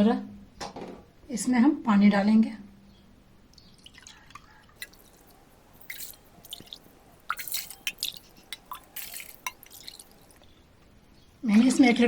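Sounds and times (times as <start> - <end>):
water pouring into a pot: 3.8 - 10.4.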